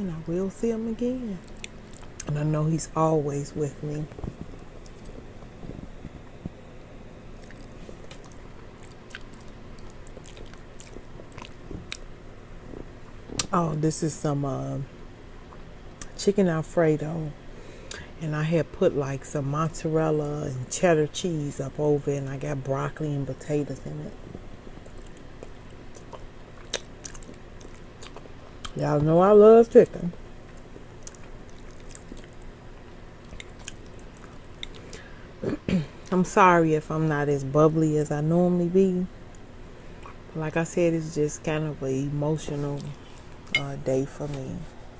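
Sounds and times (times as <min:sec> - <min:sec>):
woman chewing food: 0:07.3 - 0:12.1, 0:24.7 - 0:28.8, 0:30.4 - 0:35.2
wet mouth clicks and lip smacks: 0:26.0 - 0:28.2.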